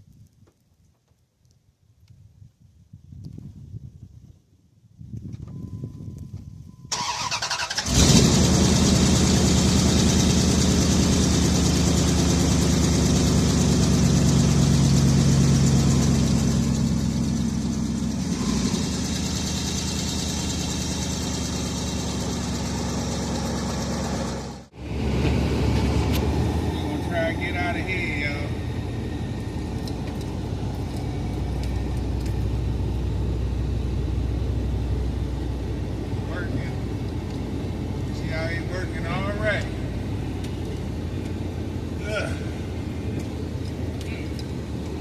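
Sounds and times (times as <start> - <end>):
pickup engine starting and idling: 6.8 - 45.0.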